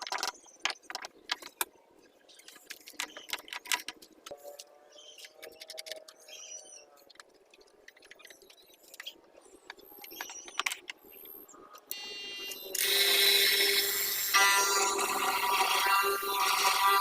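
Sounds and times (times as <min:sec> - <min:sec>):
power tool cutting into wood: 0:12.8 - 0:17.0.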